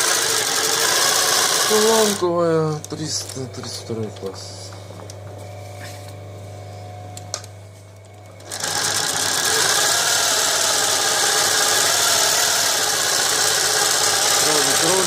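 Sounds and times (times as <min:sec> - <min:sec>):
sewing machine sewing: 0:00.0 - 0:02.2, 0:08.4 - 0:15.0
sewing machine motor humming: 0:00.0 - 0:04.3, 0:08.0 - 0:15.0.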